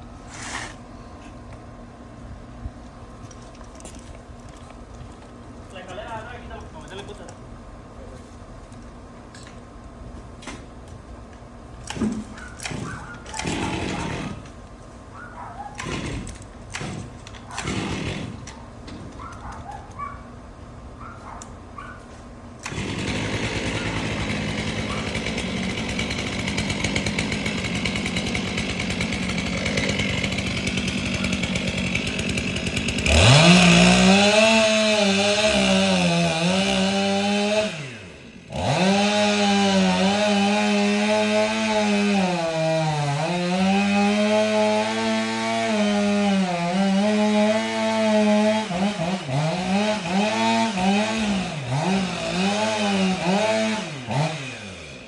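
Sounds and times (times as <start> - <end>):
chainsaw engine revving: 11.8 - 14.6, 15.7 - 18.6, 22.6 - 55.0.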